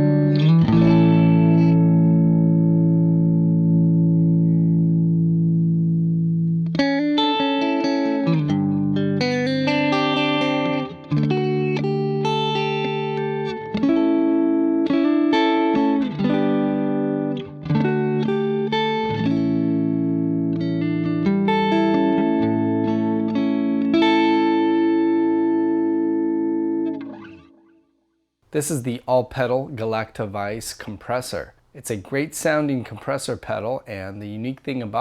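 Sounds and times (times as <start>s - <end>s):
clean electric guitar chords: 0.0s - 27.7s.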